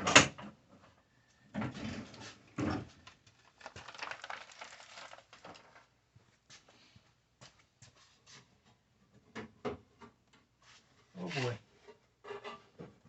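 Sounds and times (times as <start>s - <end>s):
rustling of small parts: 2.9s - 6.3s.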